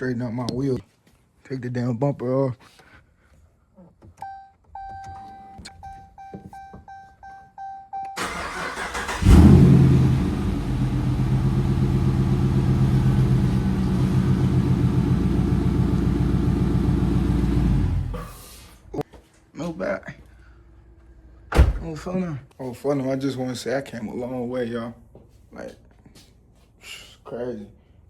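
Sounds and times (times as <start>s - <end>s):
car warning chime: 4.2s - 8.3s
starter motor cranking: 8.2s - 9.8s
car engine starting and idling: 8.2s - 18.3s.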